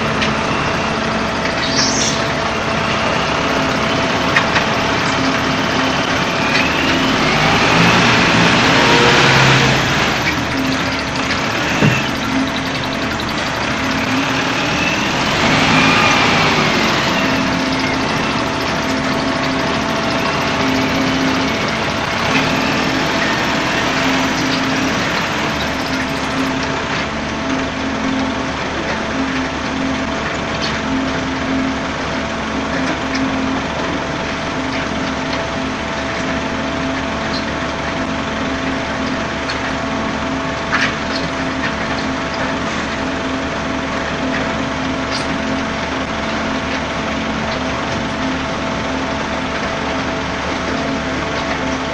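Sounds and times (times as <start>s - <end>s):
rising and falling whine: 0.0s - 36.5s
pump engine pulsing drone: 0.0s - 51.9s.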